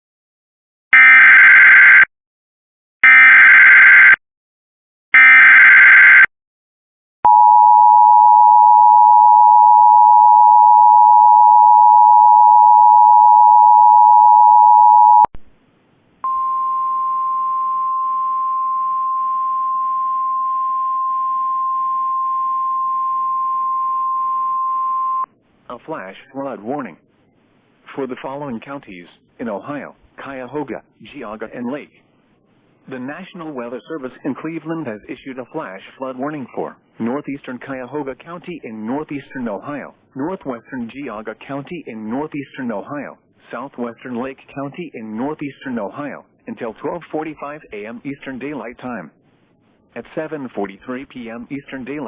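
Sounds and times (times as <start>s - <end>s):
single steady tone: 7.3s - 15.3s, 16.2s - 25.3s.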